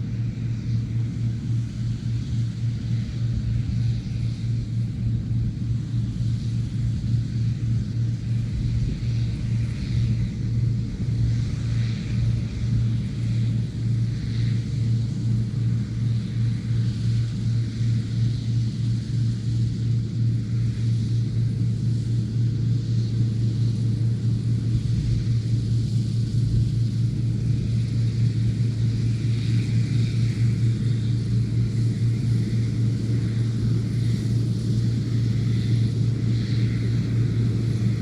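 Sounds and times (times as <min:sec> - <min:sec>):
combine harvester engine hum: 0:00.0 - 0:38.0.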